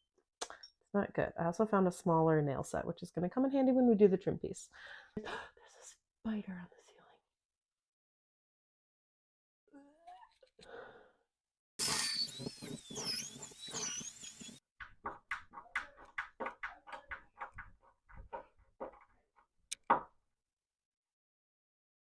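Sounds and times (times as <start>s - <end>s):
high wavering squeak: 11.8s - 14.6s.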